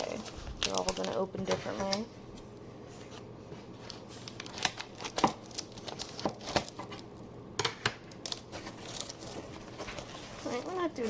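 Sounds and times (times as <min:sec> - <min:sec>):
packaging crinkling and tearing: 0:00.0 - 0:02.1, 0:03.8 - 0:07.3, 0:08.1 - 0:11.0.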